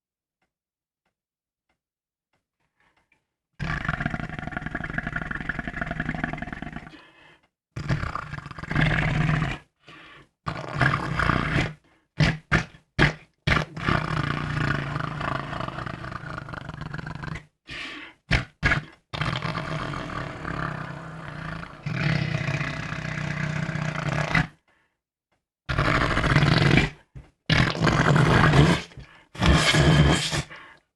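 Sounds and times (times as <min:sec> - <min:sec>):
person making fart sounds: 0:10.5 - 0:17.5, 0:18.3 - 0:24.6, 0:25.7 - 0:30.5.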